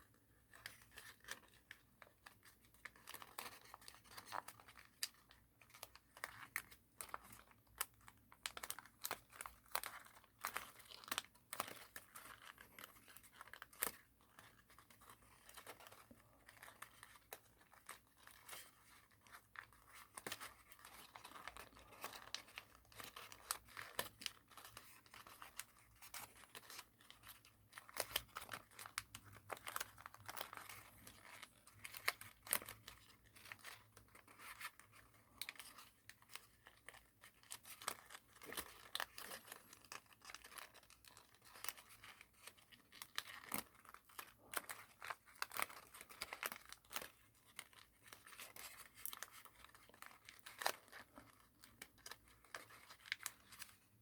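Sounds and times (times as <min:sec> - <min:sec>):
paper crinkling as folded: 0:00.0 - 0:54.0.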